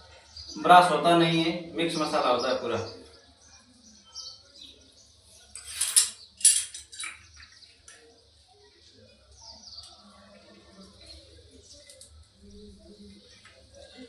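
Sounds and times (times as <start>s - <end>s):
faint bird chirping: 0.0s - 14.0s
metallic scrapes and clinks: 5.5s - 7.4s.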